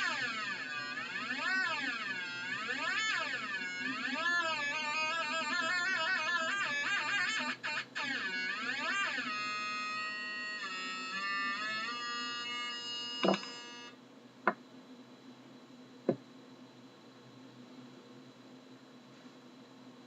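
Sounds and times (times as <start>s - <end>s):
electronic buzz: 0.0s - 14.0s.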